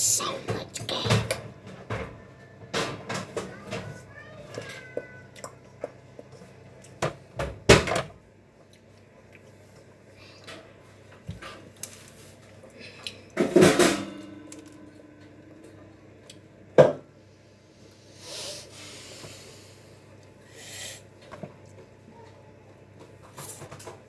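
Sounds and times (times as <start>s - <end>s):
metal kitchenware clanging: 13.4s - 14.9s.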